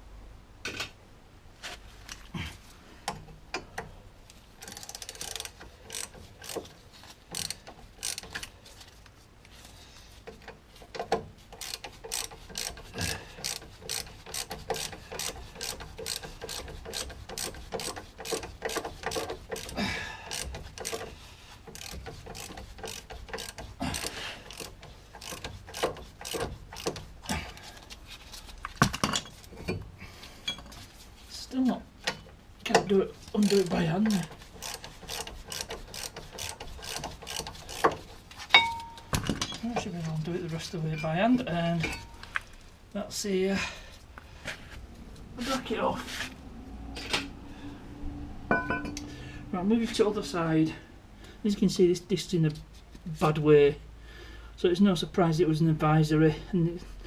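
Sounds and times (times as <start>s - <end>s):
socket ratchet clicking: 4.6s - 6.7s, 7.3s - 8.5s, 10.4s - 27.1s, 33.4s - 38.1s.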